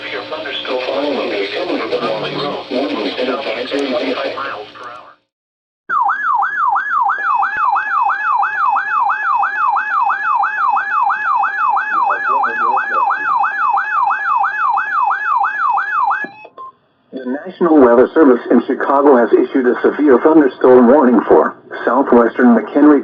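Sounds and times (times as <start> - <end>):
steady higher tone: 1.7 - 3.0
warbling electronic alert tone: 1.9 - 2.7, 5.9 - 16.6.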